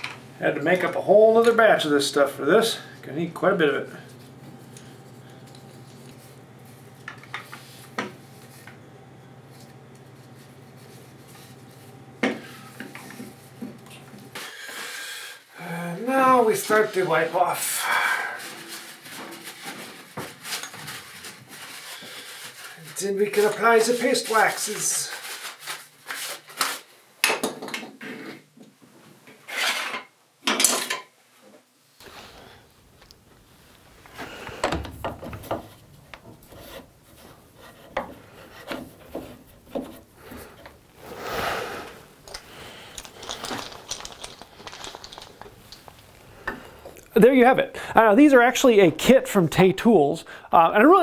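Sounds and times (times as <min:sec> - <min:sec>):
rag rubbing on wooden clamp: 0:33.5 - 0:42.8.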